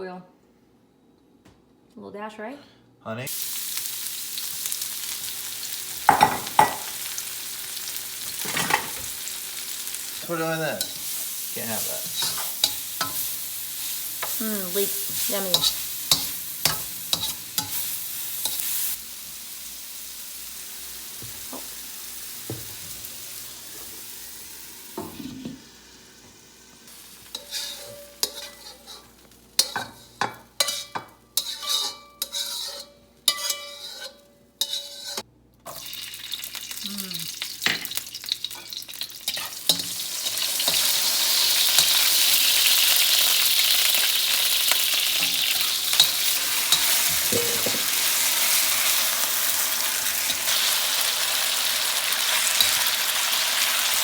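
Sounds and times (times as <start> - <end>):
frying sizzle: 3.3 - 54.0
utensil scraping a pan: 27.3 - 35.3.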